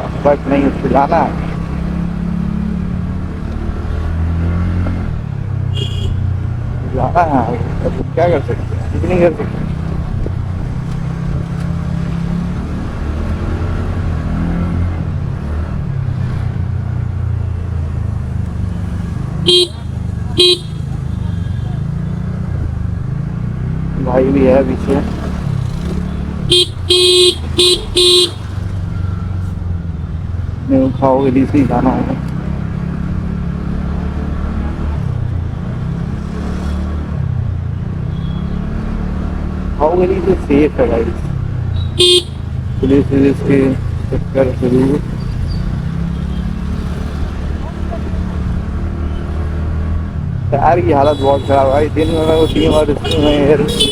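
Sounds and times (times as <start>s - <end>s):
scooter engine humming: 0.0s - 14.1s, 17.0s - 23.7s, 24.6s - 30.7s, 41.3s - 49.5s, 51.0s - 53.9s
road and wind noise: 0.0s - 53.9s
scooter engine running: 19.5s - 21.4s, 25.3s - 29.0s
short horn toot: 41.8s - 42.4s, 51.0s - 53.9s.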